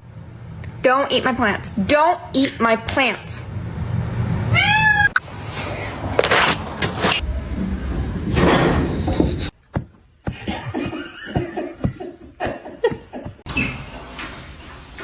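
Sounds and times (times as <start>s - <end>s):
person laughing: 8.9s - 9.5s, 10.2s - 13.4s.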